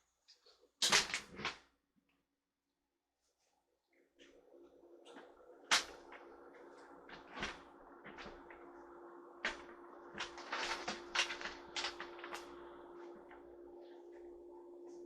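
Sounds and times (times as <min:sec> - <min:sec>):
steady low hum: 0:04.2 - 0:15.0.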